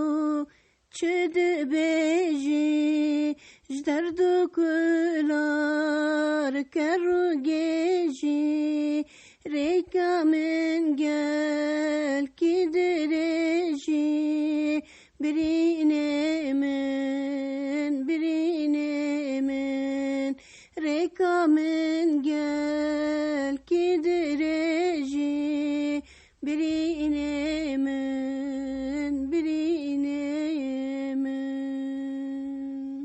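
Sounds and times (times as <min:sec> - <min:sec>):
woman singing unaccompanied: 0:00.0 - 0:33.0
singer breathing: 0:03.4 - 0:03.7, 0:09.0 - 0:09.5, 0:14.8 - 0:15.2, 0:20.4 - 0:20.8, 0:26.0 - 0:26.4.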